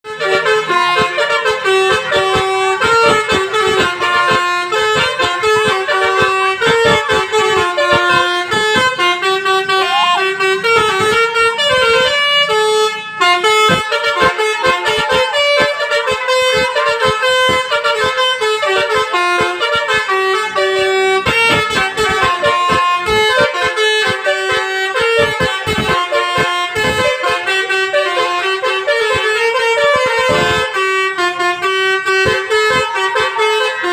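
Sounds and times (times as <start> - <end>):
musical air horn melody: 0.0 - 33.9.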